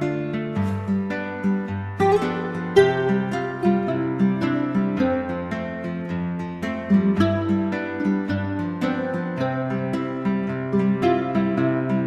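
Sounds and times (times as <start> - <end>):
plucked string instrumental music: 0.0 - 12.0.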